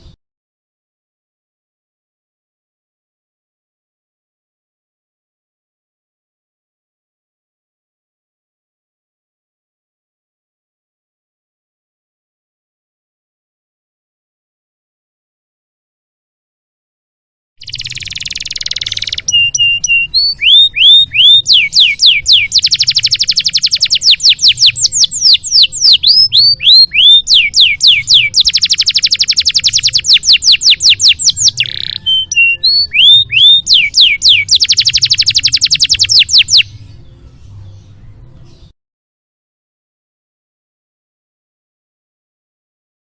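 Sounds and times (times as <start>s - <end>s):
canary singing: 17.6s - 38.7s.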